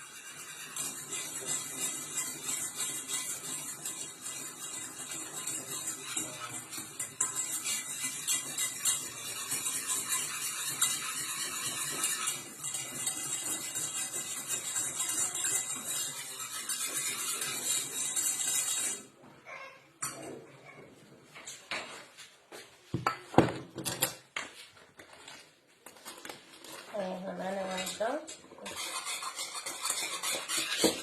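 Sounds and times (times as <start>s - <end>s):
utensil scraping a pot: 0.0s - 19.2s, 26.0s - 31.0s.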